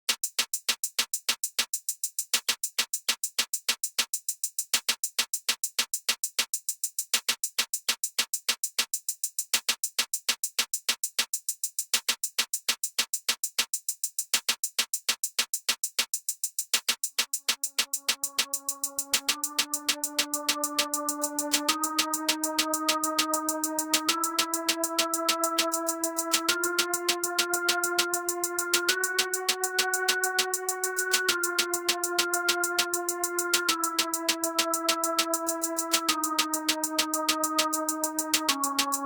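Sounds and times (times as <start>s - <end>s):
drum machine beat: 16.8s - 39.0s.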